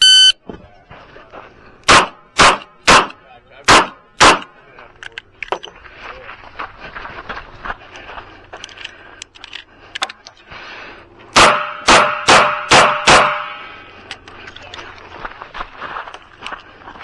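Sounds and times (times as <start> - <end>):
handgun shots with echo: 1.9 - 4.5, 11.4 - 13.6.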